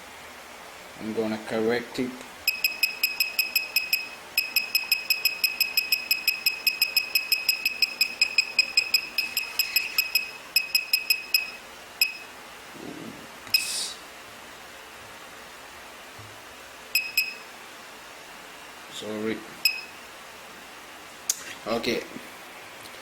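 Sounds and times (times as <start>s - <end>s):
short high keystroke beeps: 2.5s - 12.3s, 17.0s - 17.5s, 19.6s - 20.0s.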